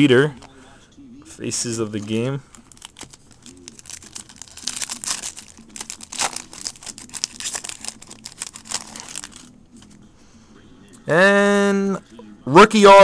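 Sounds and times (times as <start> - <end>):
card pack wrappers crinkling: 1.8 - 10.0.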